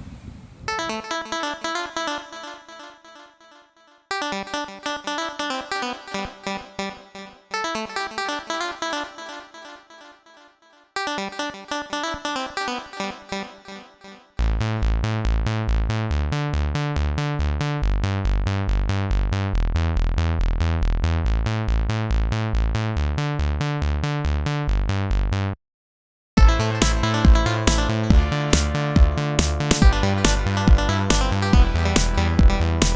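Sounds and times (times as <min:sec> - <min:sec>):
electronic music with heavy bass: 0:26.4 - 0:32.9
light plucked music: 0:26.4 - 0:32.9.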